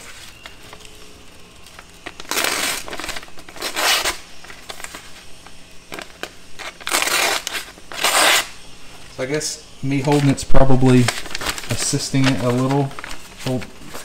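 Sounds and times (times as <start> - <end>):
paper crinkles and clicks: 10.0 - 14.0.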